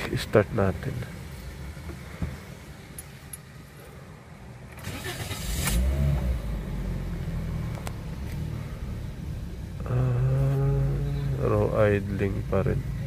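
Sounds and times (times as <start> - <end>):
car engine idling: 0.0 - 13.0
car starter cranking: 4.7 - 6.4.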